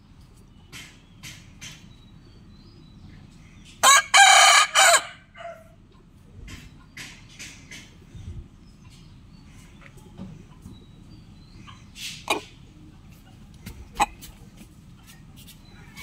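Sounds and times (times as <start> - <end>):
rooster crowing: 3.8 - 5.8.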